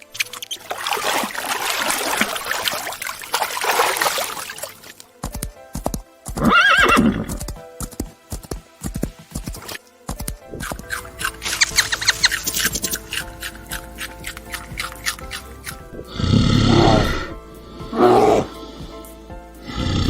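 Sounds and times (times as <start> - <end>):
background music with steady beat: 3.0 - 20.0
horse neighing: 6.4 - 7.4, 16.0 - 18.6.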